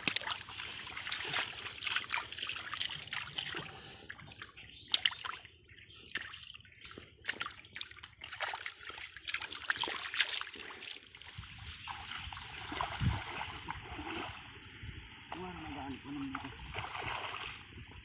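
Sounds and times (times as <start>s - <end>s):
hands splashing in water: 0.0s - 3.8s, 4.9s - 5.5s, 6.1s - 11.1s
water trickling: 0.0s - 17.6s.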